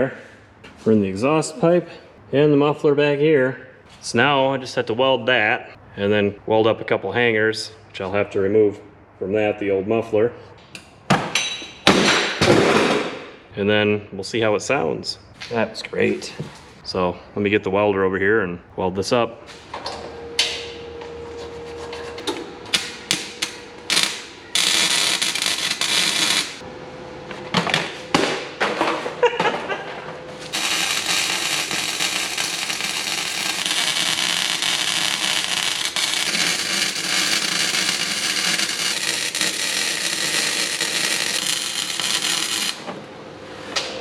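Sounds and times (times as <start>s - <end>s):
welding arc crackling: 22.7s - 26.6s, 30.4s - 42.8s.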